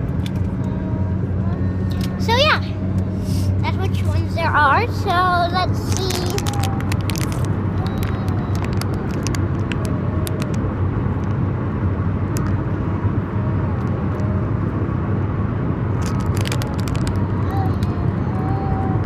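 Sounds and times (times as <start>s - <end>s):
car road and engine noise: 0.0s - 19.0s
light clicks and crackles: 5.8s - 10.6s, 16.0s - 18.0s.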